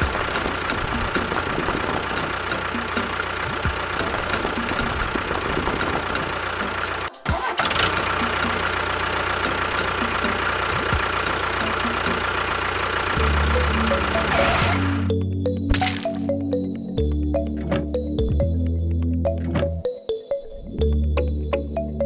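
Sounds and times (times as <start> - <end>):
small tractor engine running: 0.0 - 15.2
steady musical tones: 0.0 - 22.0.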